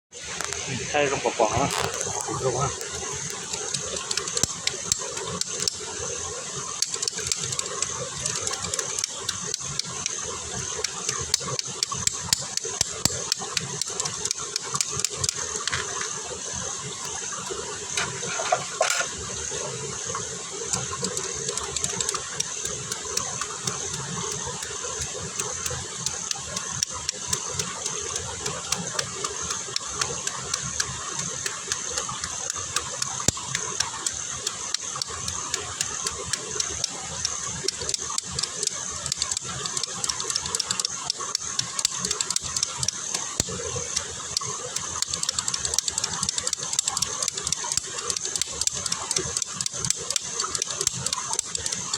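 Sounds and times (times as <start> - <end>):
crackles and pops: 0.1 - 0.7, 1.5 - 6.0, 6.7 - 16.2, 20.6 - 51.9
meat sizzling: 20.7 - 51.9.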